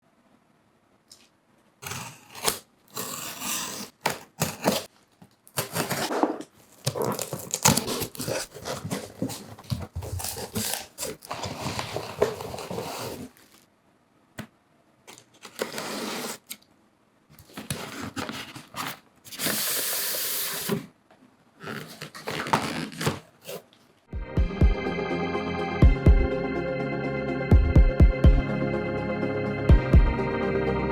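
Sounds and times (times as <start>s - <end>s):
tearing: 1.8s - 4.9s, 5.5s - 13.6s
rustling and scraping: 3.9s - 13.7s, 17.3s - 20.9s
organ music: 24.1s - 30.9s.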